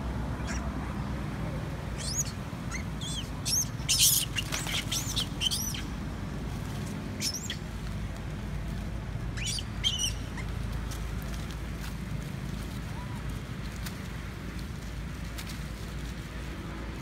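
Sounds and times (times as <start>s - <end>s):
baby monkey squealing: 2.0s - 5.9s, 7.2s - 7.6s, 9.4s - 10.5s.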